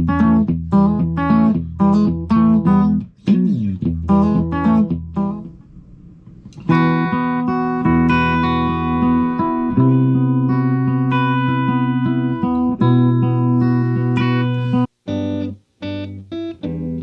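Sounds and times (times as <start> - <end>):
clean electric guitar chords: 6.6 - 17.0.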